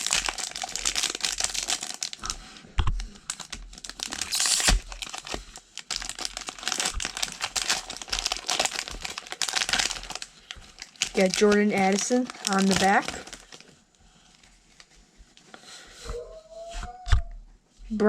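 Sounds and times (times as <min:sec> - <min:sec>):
foil tearing: 0:00.0 - 0:02.4, 0:03.3 - 0:13.7
foil pack crinkling: 0:00.0 - 0:15.5.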